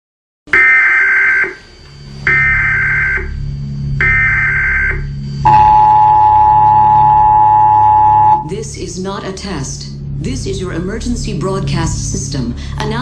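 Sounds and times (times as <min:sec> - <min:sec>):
low steady drone: 0:00.5 - 0:13.0
warbling data tones: 0:00.6 - 0:08.5
two-tone attention signal: 0:04.0 - 0:08.4.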